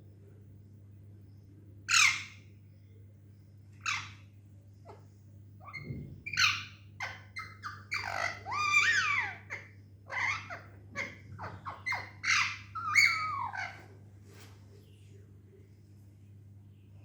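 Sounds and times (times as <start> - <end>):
bird chirping and squawking: 1.9 - 2.4, 3.8 - 4.3, 5.6 - 13.9.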